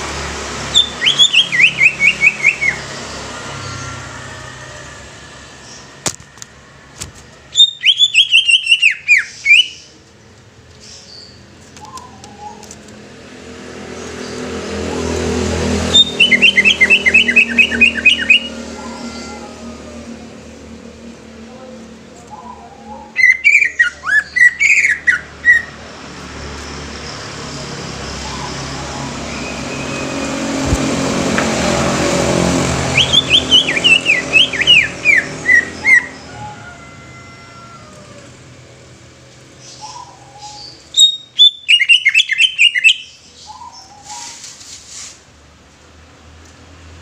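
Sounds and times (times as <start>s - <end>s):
passing vehicle: 0.0s - 8.5s, 10.0s - 47.0s
bird whistling song: 0.7s - 2.9s, 7.5s - 9.9s, 11.2s - 12.7s, 15.9s - 19.0s, 22.4s - 25.7s, 32.9s - 36.1s, 39.6s - 44.4s.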